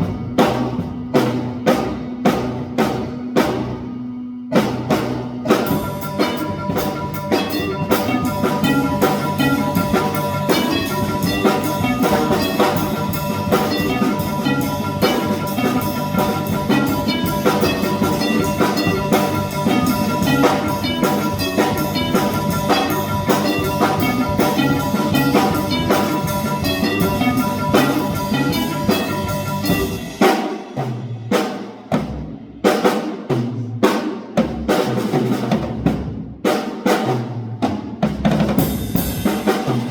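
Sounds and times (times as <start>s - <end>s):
drum kit playing: 0.0s - 39.9s.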